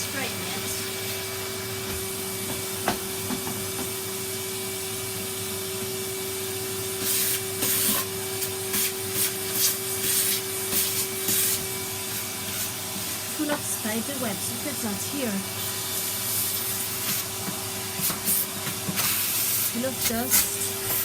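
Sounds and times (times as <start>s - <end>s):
vacuum cleaner motor hum: 0.0s - 21.0s
vacuum suction hiss: 0.0s - 21.0s.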